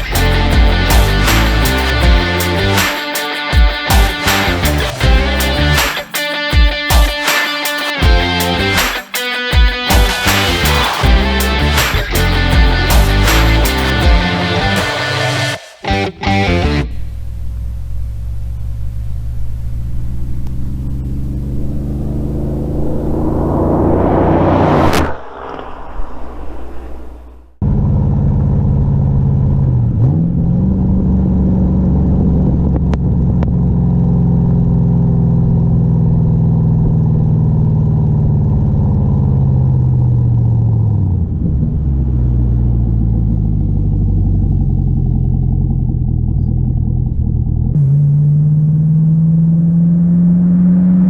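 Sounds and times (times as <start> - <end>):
car engine running: 27.6 - 50.4.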